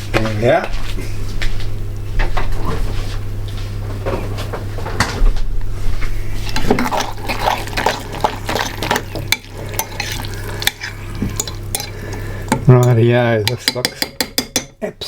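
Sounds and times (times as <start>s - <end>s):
utensil beating in a bowl: 6.4s - 14.8s.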